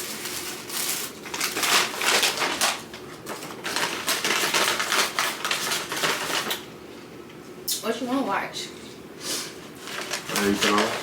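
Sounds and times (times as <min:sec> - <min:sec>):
paper packaging crinkling: 0:00.0 - 0:06.6, 0:09.7 - 0:11.0.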